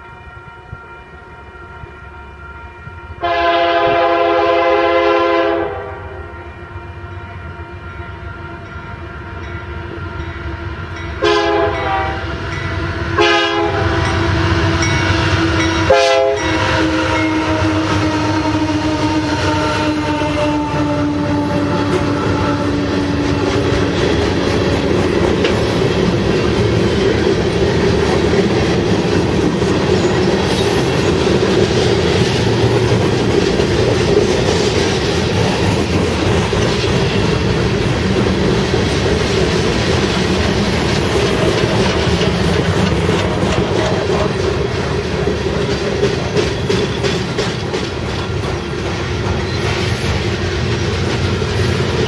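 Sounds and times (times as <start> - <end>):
train horn: 0.0 - 24.8
train wheels rumbling on rails: 7.8 - 52.0
clickety-clack over rail joints: 17.2 - 52.0.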